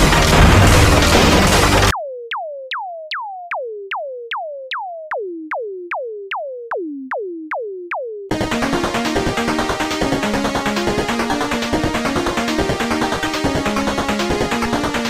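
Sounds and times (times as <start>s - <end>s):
loud noisy crash: 0.0s - 1.9s.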